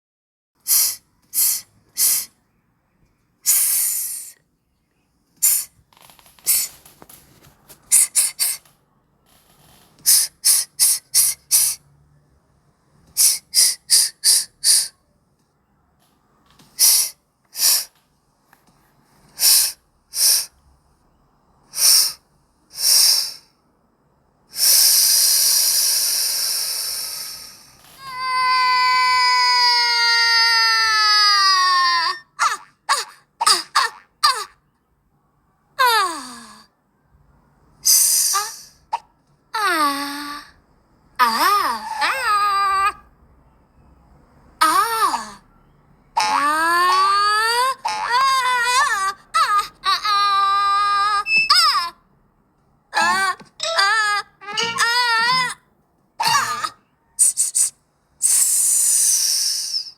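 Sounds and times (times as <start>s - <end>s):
short bursts of hissing: 0.7s - 2.3s, 57.2s - 59.9s.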